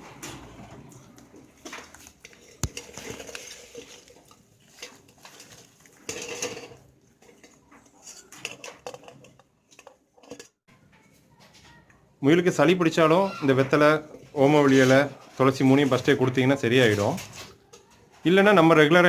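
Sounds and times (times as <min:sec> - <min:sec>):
small clicks and rustles: 0:00.1 - 0:12.1.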